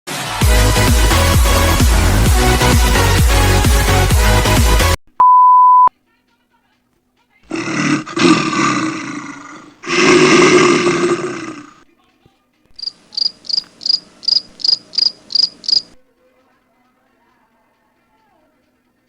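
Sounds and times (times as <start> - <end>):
rough roar-like sounds: 7.5 - 11.8.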